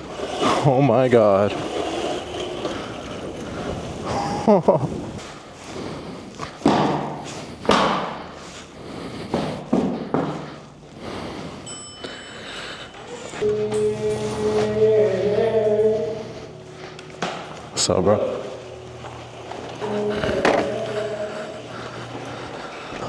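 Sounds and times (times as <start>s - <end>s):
electric motor hum: 0.0s - 5.2s, 12.9s - 23.0s.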